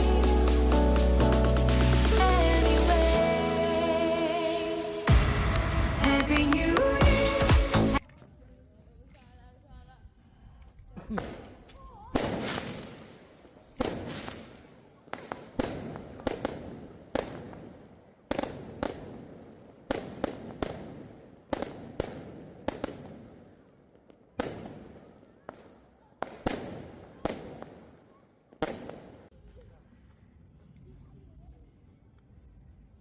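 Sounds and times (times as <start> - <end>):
fireworks bursting: 11.1 - 29.3.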